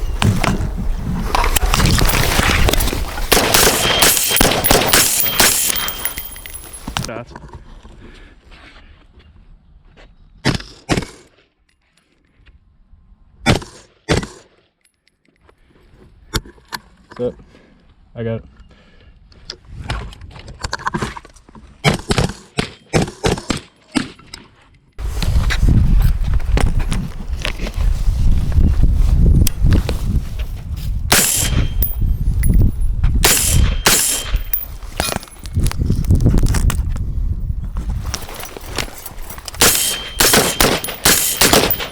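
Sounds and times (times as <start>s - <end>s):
gunshots: 1.6s - 7.1s, 31.1s - 32.1s, 33.2s - 35.2s, 39.6s - 41.9s
thin metallic ringing: 3.6s - 7.1s, 31.1s - 35.5s, 38.4s - 41.9s.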